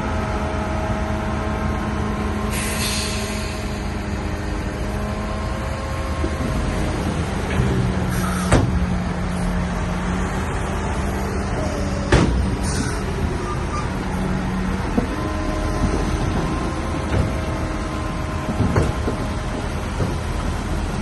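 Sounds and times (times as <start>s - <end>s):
bulldozer diesel engine running: 0.0s - 21.0s.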